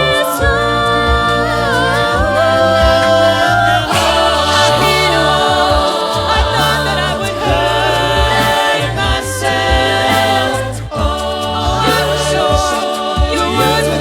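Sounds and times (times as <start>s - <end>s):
a cappella group singing harmonies: 0.0s - 14.0s
sung bass line: 0.0s - 14.0s
vocal percussion hits: 0.0s - 14.0s.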